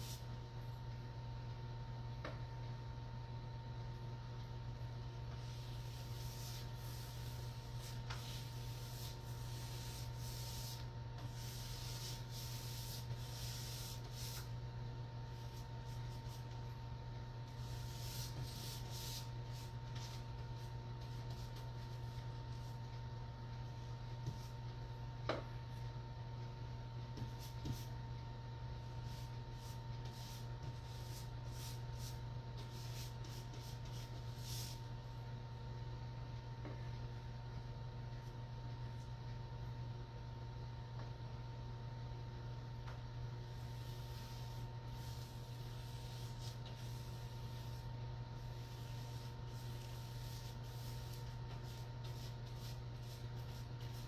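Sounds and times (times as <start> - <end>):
steady low hum: 0.0 - 54.0
paint applicator rubbing on wall: 5.3 - 14.5, 17.5 - 22.7, 28.9 - 34.9, 43.5 - 54.0.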